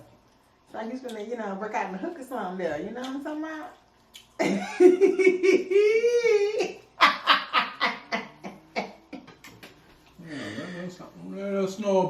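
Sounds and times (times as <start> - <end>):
hearty laughter: 4.4 - 9.5.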